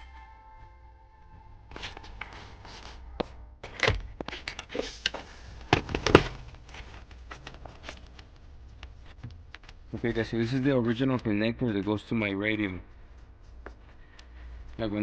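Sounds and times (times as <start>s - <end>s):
plastic connectors knocking and rustling: 3.6s - 10.1s.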